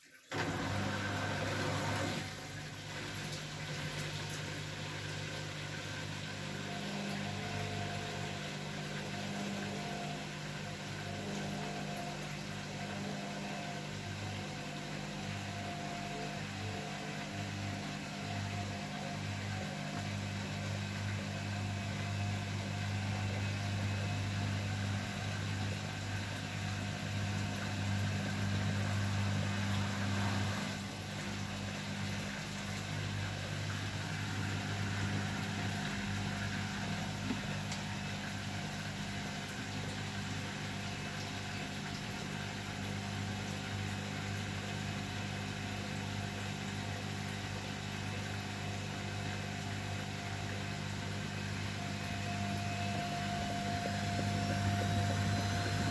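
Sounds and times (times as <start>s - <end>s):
washing machine humming: 0.0s - 55.9s.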